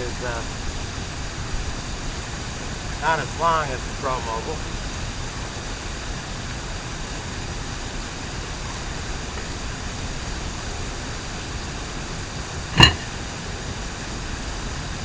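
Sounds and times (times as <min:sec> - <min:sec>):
sharp knock: 0:12.8 - 0:13.2.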